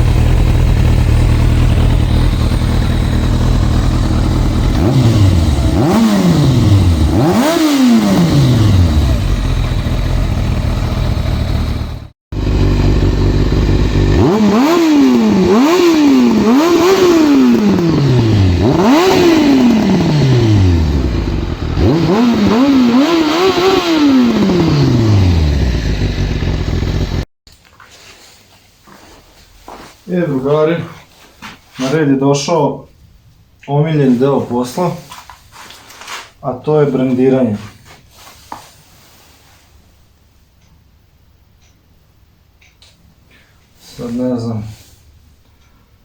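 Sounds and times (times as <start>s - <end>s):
motorcycle engine revving: 0.0s - 27.3s.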